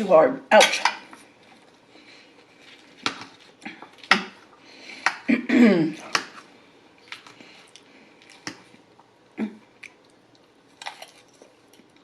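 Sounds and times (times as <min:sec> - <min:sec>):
chewing crunchy salad: 0:09.7 - 0:12.0.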